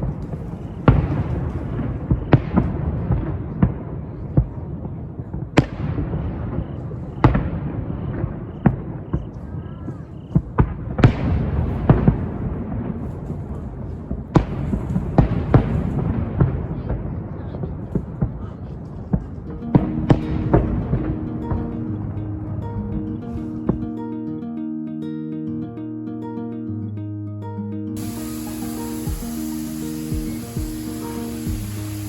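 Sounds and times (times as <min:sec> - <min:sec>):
firework shells booming: 0:28.0 - 0:32.0.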